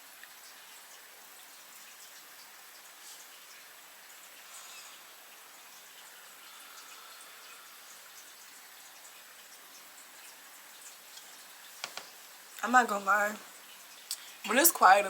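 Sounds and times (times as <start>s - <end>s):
faint steady hiss: 0.0s - 15.0s
faint ticks: 10.8s - 12.6s, 14.0s - 14.3s.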